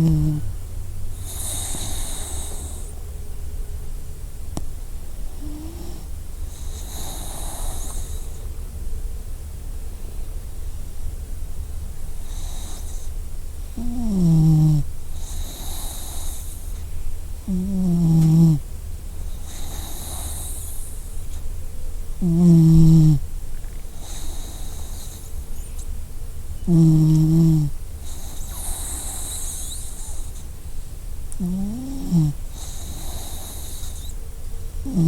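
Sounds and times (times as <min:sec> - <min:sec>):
dog snoring: 0:00.0 - 0:00.5, 0:01.1 - 0:02.9, 0:05.3 - 0:08.4, 0:12.1 - 0:16.8, 0:17.4 - 0:18.7, 0:19.3 - 0:21.2, 0:22.2 - 0:23.3, 0:23.9 - 0:25.4, 0:26.6 - 0:30.5, 0:31.3 - 0:34.2
steady low rumble: 0:00.0 - 0:14.2
hissing breath: 0:01.2 - 0:03.0, 0:24.0 - 0:25.5, 0:28.0 - 0:30.6, 0:32.4 - 0:34.2.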